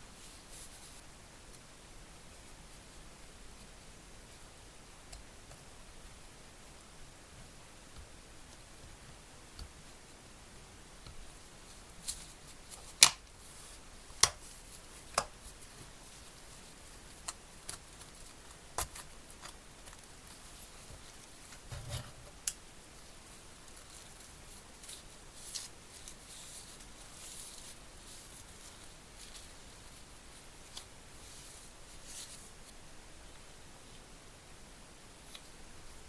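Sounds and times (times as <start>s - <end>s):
scraping and rustling: 5.6s - 32.8s
sharp clicks and taps: 14.2s - 14.5s.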